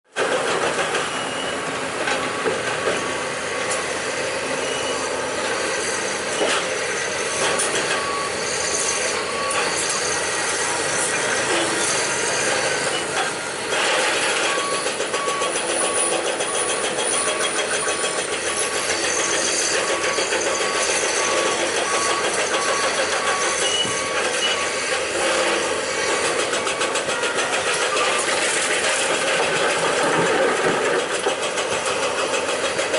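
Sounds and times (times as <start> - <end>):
excavator diesel engine under load: 0.1 - 32.9
warning alarm beeping: 7.7 - 28.4.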